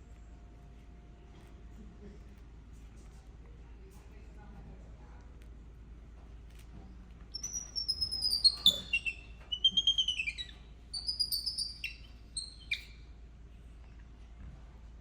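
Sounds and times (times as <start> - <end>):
baby monkey squealing: 7.3 - 13.0.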